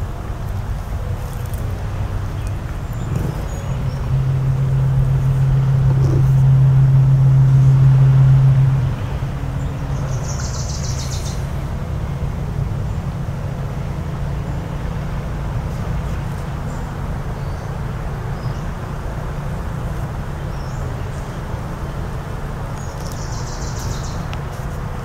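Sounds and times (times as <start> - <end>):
low rumble: 1.9 - 13.0
bird trill: 10.0 - 11.4.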